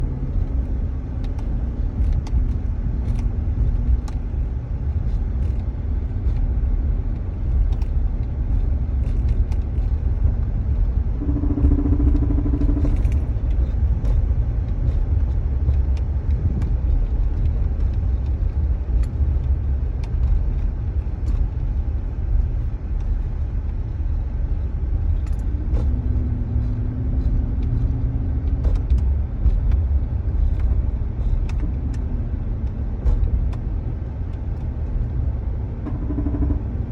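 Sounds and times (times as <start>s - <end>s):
engine ticking: 0.0s - 36.9s
pickup truck engine rumbling: 0.0s - 36.9s
humming tone: 11.1s - 13.6s, 35.8s - 36.9s.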